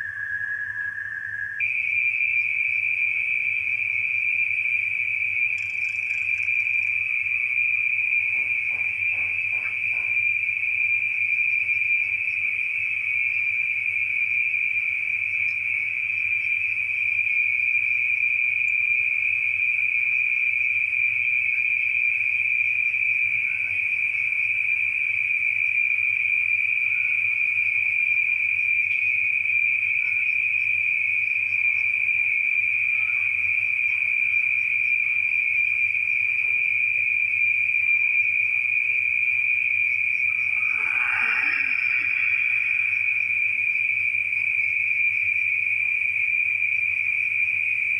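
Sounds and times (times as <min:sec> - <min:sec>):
crickets trilling: 0:00.0 - 0:47.9
low steady hum: 0:39.8 - 0:44.7.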